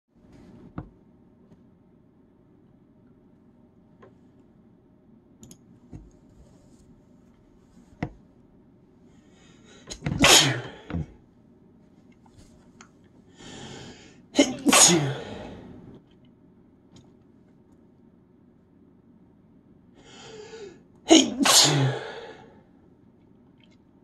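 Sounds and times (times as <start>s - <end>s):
person sneezing: 9.9s - 11.1s, 14.4s - 15.7s, 20.3s - 22.5s
breathy intake: 20.0s - 22.6s.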